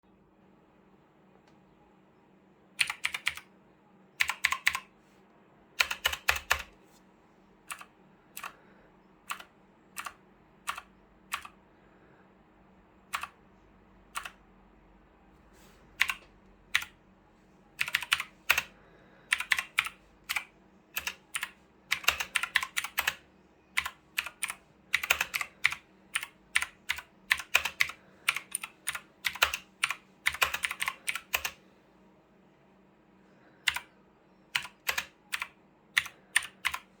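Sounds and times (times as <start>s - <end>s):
clicky mechanical keyboard typing: 2.8s - 3.5s, 4.2s - 4.9s, 5.8s - 6.8s, 7.7s - 8.6s, 9.3s - 11.6s, 13.1s - 13.4s, 14.1s - 14.4s, 16.0s - 17.0s, 17.8s - 18.7s, 19.3s - 23.2s, 23.8s - 31.6s, 33.6s - 33.9s, 34.5s - 37.0s.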